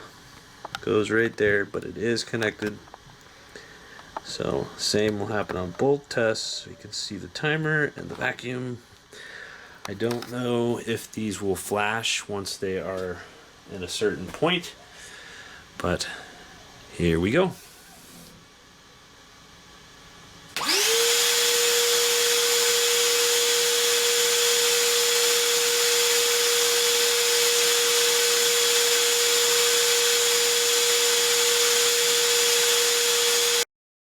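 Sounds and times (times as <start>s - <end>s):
vacuum motor whining: 20.5s - 33.6s.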